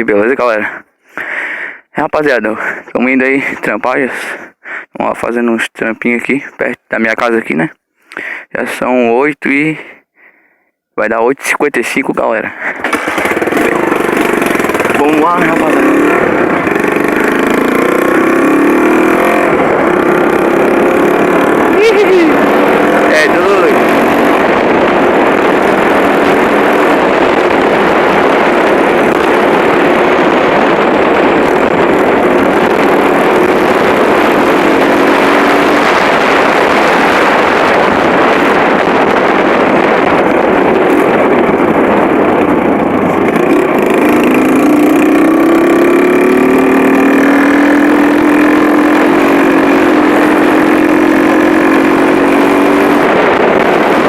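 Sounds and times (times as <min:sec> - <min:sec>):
steady rush of noise: 0:11.6 - 0:54.0
motorcycle engine running: 0:12.6 - 0:54.0.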